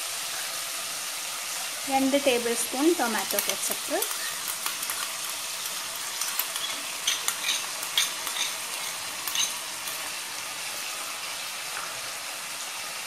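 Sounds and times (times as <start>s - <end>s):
vegetables sizzling in hot oil: 0.0s - 13.0s
spoon scraping a pan: 2.9s - 10.2s.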